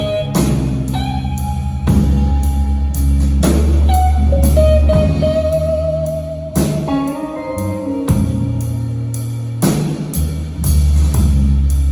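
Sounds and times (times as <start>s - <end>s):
blues band playing: 0.0s - 11.9s
lead guitar long wavering note: 3.9s - 9.4s.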